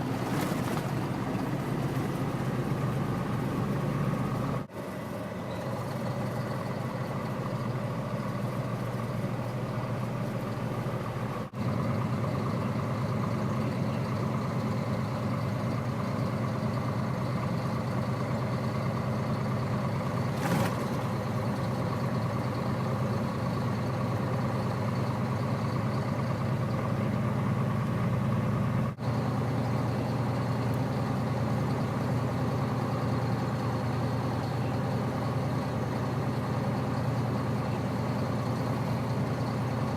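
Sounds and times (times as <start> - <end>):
diesel truck engine drone: 0.0 - 39.9
road noise: 0.0 - 39.9.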